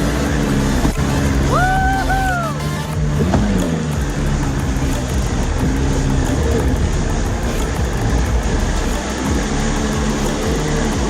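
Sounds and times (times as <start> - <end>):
jet ski engine running: 0.0 - 11.0.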